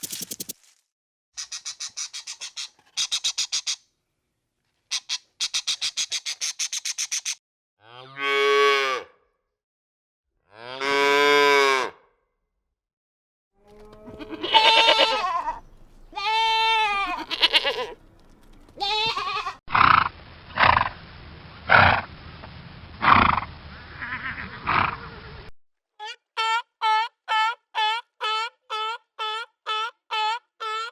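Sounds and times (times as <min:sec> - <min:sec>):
farm animals calling: 0:13.7 - 0:18.1, 0:18.7 - 0:20.7.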